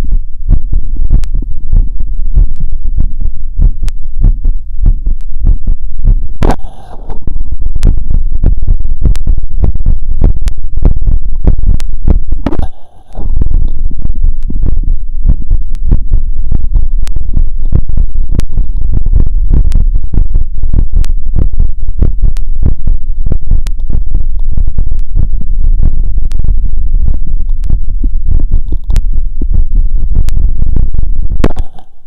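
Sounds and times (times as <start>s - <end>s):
fast heartbeat through stethoscope: 0.0s - 32.0s.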